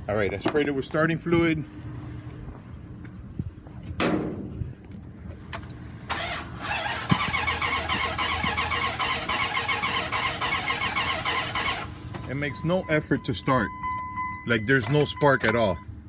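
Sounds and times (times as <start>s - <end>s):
starter motor cranking engine: 6.1s - 12.1s.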